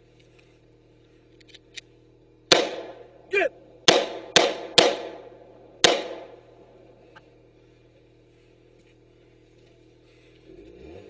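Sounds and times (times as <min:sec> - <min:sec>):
gunshots with ringing tail: 0:02.5 - 0:06.8.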